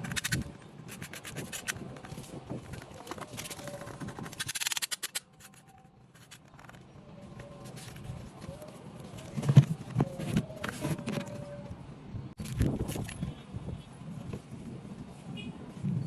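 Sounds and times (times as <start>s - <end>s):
hand tool scraping on box: 0.0s - 6.8s
sharp clicks: 3.3s - 5.6s.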